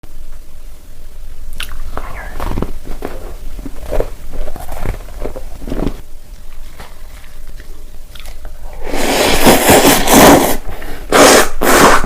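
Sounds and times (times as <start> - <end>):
person chewing food: 1.6 - 10.0
crisp crunches: 1.7 - 10.2.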